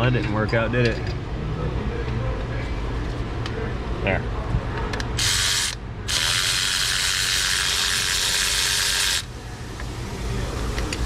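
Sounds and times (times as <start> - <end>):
air ratchet running: 5.2 - 9.3.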